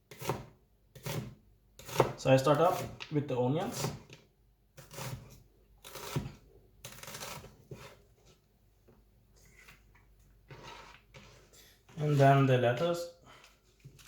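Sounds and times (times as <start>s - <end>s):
knife cutting onion on board: 0.1s - 3.0s, 3.6s - 4.2s, 4.8s - 8.0s.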